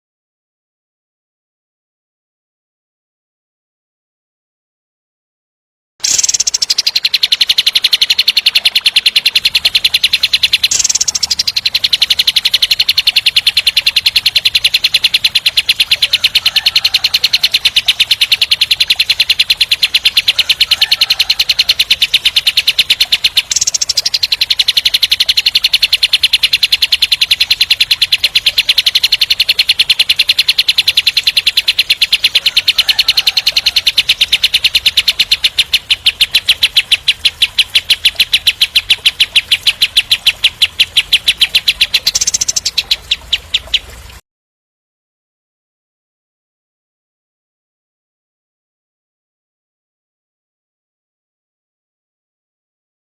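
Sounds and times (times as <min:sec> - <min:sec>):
songbird fast high trill: 0:06.0 - 0:44.0.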